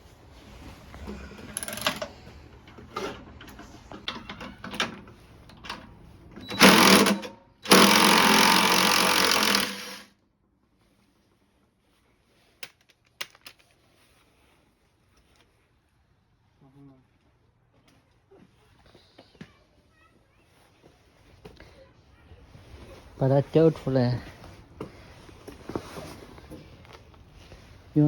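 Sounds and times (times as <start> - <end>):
power driver running: 6.4 - 10.1.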